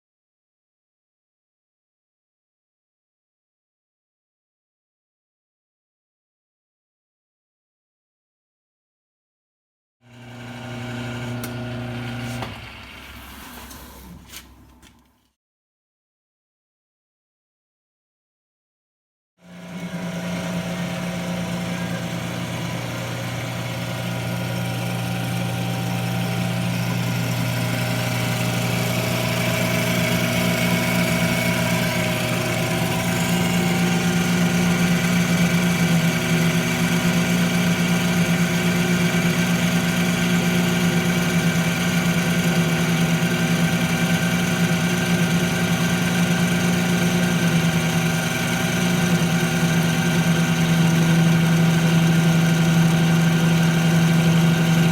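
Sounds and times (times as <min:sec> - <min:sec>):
metal lathe humming and whining: 0:10.1 - 0:13.8, 0:19.5 - 0:54.9.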